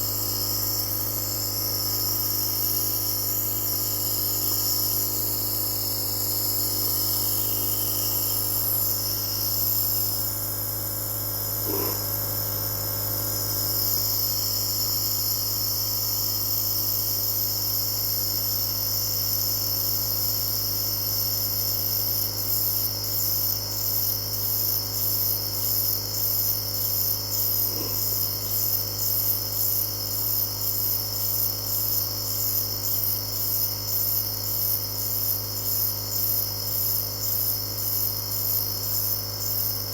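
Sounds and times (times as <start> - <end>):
nebulizer compressor humming: 0.0 - 20.1, 24.4 - 30.3.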